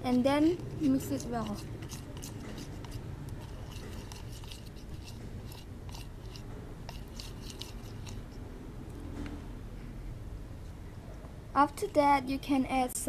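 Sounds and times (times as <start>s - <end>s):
tool scraping a container: 0.0s - 8.4s.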